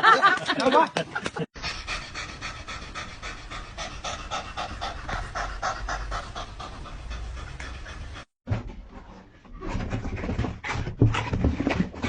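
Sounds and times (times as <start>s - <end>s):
dog panting: 1.6s - 8.4s.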